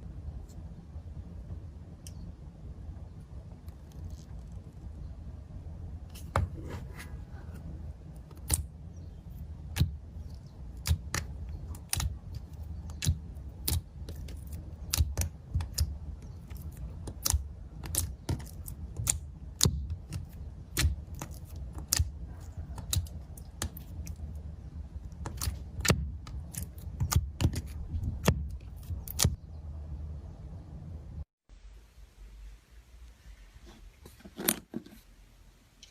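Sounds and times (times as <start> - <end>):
low steady hum: 0.0 - 35.9
slime clicking and popping: 9.7 - 24.2, 25.1 - 29.4.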